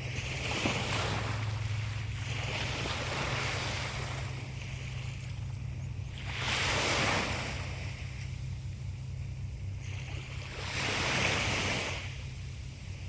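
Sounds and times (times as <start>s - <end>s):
sea waves washing ashore: 0.0s - 13.0s
steady low rumble: 7.2s - 10.7s.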